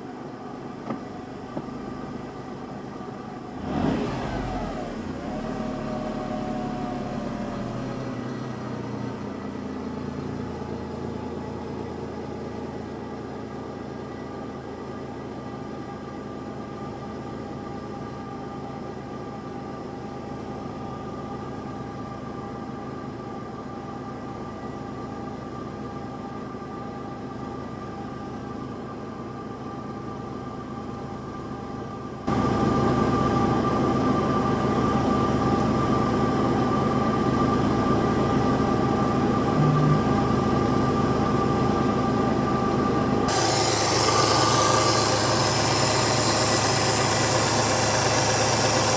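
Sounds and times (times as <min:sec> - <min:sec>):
car engine idling: 0:32.3 - 0:48.9.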